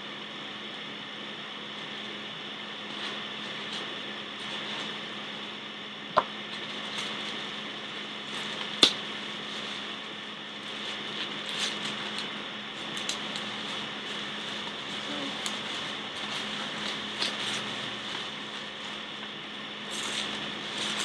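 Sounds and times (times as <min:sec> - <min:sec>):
low electrical hum: 0:00.0 - 0:21.0
steady hiss: 0:00.0 - 0:21.0
plastic crackling and handling: 0:06.5 - 0:07.5, 0:10.6 - 0:21.0
plastic package snapping: 0:08.7 - 0:09.0.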